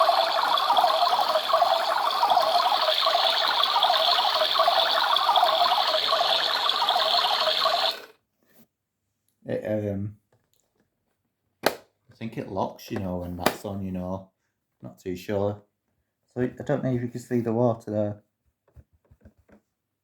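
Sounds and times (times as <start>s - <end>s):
toy washing machine whirring rattle: 0.0s - 8.2s.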